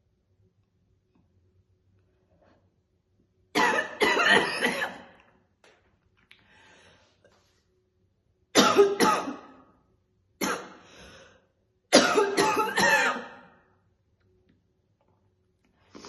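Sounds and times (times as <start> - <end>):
woman coughing: 3.6 - 5.1, 8.6 - 9.6, 10.4 - 10.8, 11.9 - 13.5.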